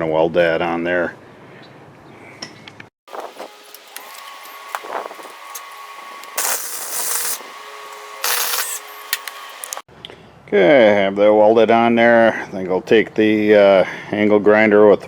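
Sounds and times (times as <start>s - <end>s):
welding arc crackling and hissing: 3.2s - 9.8s
steady hum: 3.2s - 9.9s.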